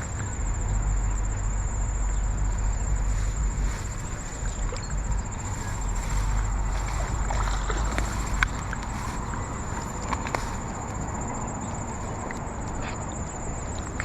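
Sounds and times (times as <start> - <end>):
insect drone: 0.0 - 14.0
low rumble: 0.0 - 14.0.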